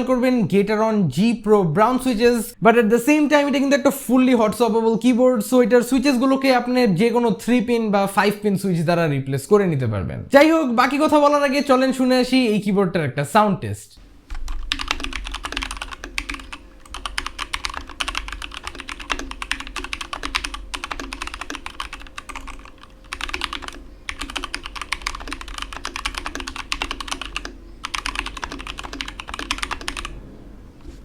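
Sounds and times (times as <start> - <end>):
fast mechanical keyboard typing: 14.3 - 30.2.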